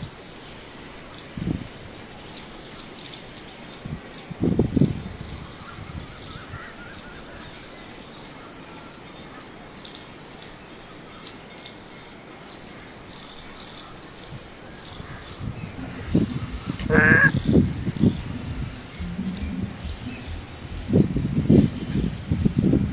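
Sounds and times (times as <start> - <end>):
small birds chirping: 0.4 - 22.9
steady background hiss: 5.4 - 22.9.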